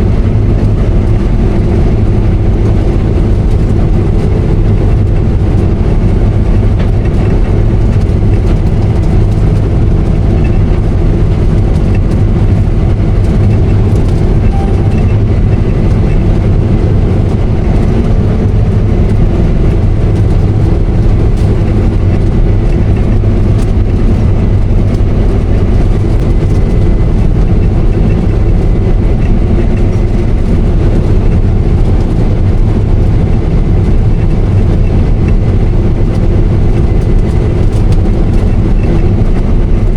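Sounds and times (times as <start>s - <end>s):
combine harvester droning: 0.0s - 39.9s.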